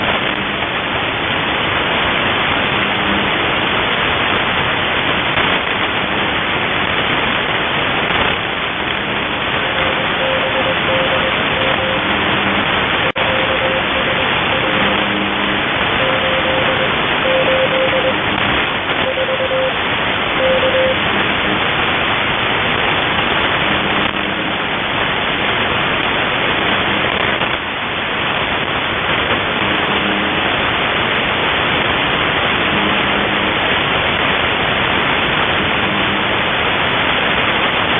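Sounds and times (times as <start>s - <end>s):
faint low buzzes: 0.0s - 37.9s
radio static: 0.0s - 37.9s
morse code tone: 9.6s - 21.7s, 29.6s - 30.4s, 35.6s - 36.3s.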